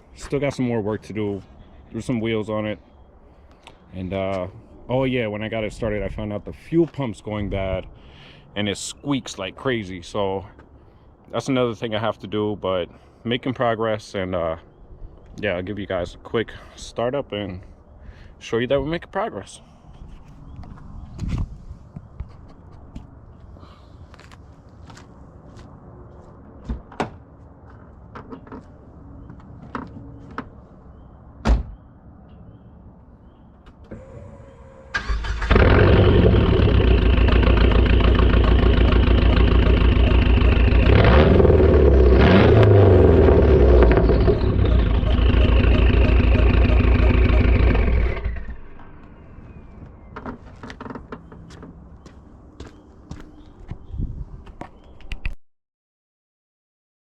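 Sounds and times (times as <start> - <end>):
loud car engine running: 35.4 - 49.1.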